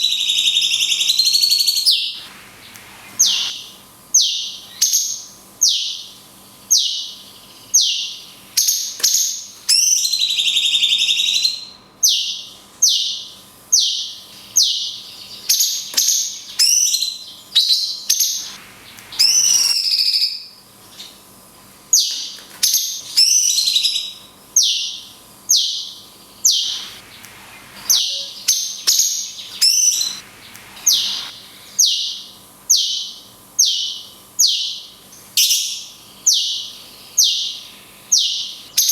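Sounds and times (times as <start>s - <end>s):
bird trilling: 3.0s - 6.0s, 16.6s - 20.5s, 23.2s - 34.9s.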